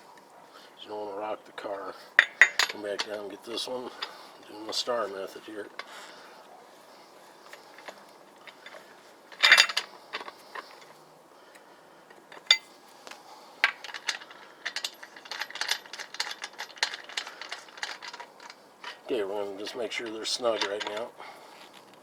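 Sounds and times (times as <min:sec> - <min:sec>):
lug wrench clinking on lug nuts: 0:02.1 - 0:06.2, 0:07.4 - 0:11.1, 0:12.0 - 0:12.8, 0:13.6 - 0:21.3.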